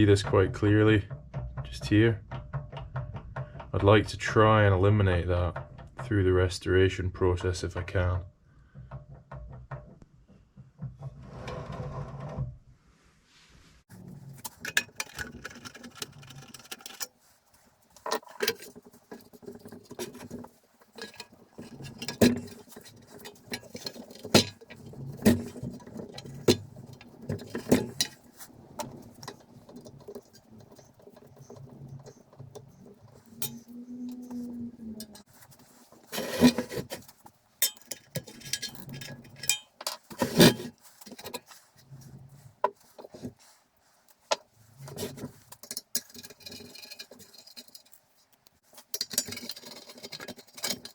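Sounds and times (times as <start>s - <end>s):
metal tools clinking and tapping: 14.2s - 41.7s, 44.3s - 50.9s.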